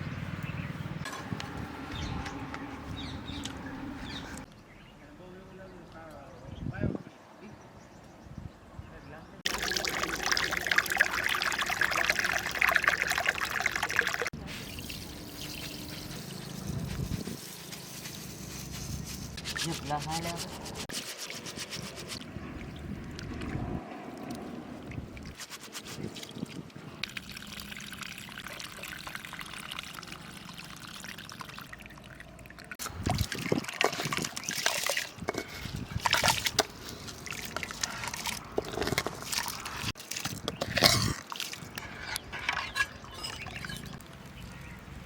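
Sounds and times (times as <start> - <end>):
liquid sloshing in a pot: 9.5 - 16.6, 27.0 - 44.3
splashes and knocks: 32.8 - 44.4.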